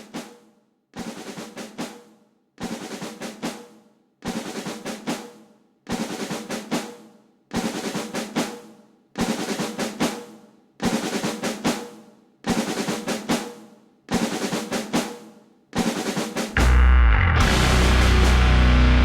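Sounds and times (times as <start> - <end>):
drum beat music: 15.9 - 19.0.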